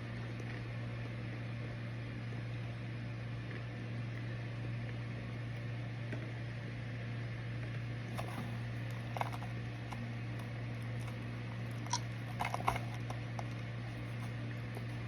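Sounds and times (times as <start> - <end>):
microwave oven humming: 0.0 - 15.0.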